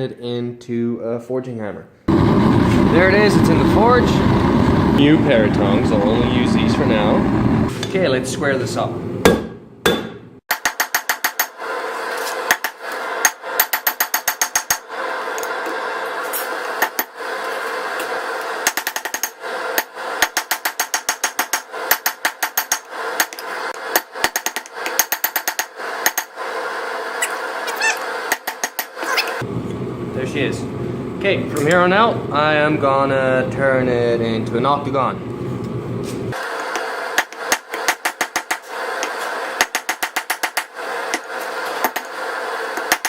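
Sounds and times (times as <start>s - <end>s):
steady rushing noise: 2.1s - 9.0s
hammer striking steel on anvil: 9.2s - 11.6s.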